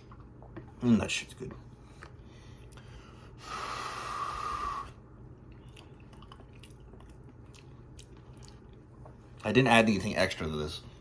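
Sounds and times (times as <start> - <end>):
man's wheezy whistling breath: 3.0 - 5.0.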